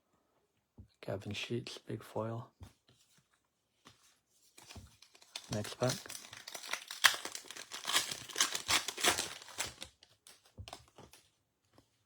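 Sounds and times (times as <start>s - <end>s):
card pack wrapper tearing: 5.0s - 10.4s.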